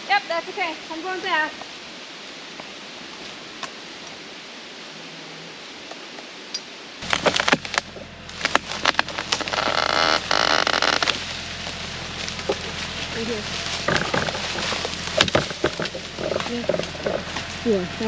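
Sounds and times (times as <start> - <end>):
steady hiss: 0.0 - 7.1
crackling and snapping: 7.0 - 18.0
low engine hum: 7.0 - 18.0.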